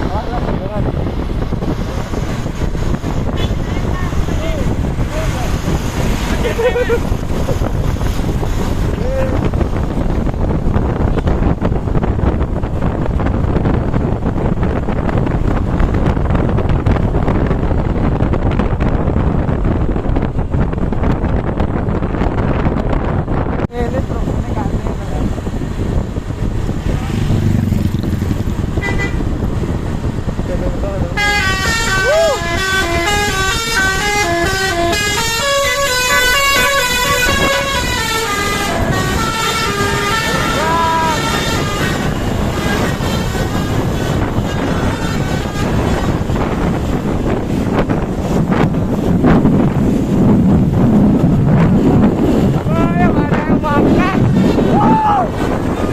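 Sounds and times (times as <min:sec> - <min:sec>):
wind buffeting microphone: 0:00.0 - 0:55.9
bus horn playing melody: 0:28.8 - 0:29.2, 0:31.2 - 0:46.9.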